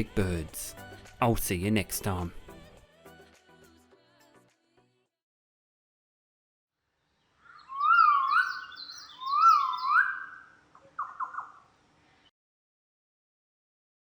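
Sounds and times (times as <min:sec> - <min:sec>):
bird whistling calls: 0:07.4 - 0:11.7.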